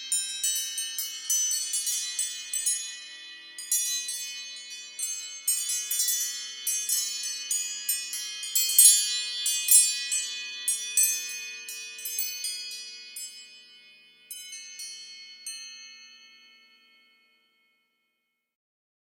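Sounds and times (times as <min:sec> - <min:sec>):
high-pitched wind chime strikes: 0:00.0 - 0:18.0.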